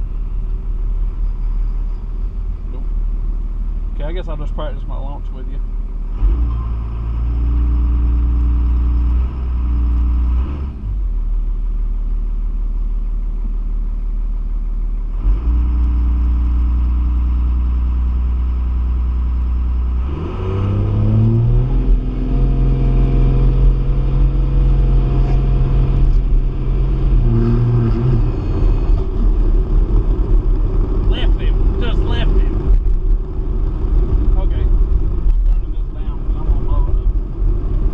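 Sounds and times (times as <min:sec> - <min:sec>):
car engine revving and accelerating: 0:06.0 - 0:11.1, 0:15.1 - 0:17.9, 0:19.4 - 0:37.9.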